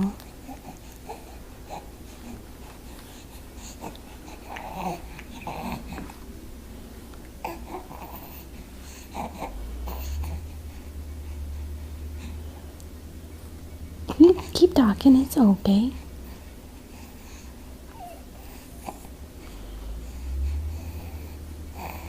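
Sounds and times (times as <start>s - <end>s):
infant cooing and babbling: 3.6s - 6.1s, 7.4s - 10.6s, 17.9s - 19.1s
low rumble: 4.6s - 22.0s.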